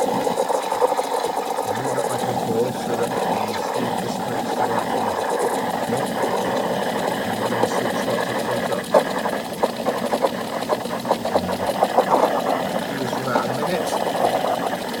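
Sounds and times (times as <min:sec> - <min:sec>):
steam wand steaming milk: 0:00.0 - 0:15.0.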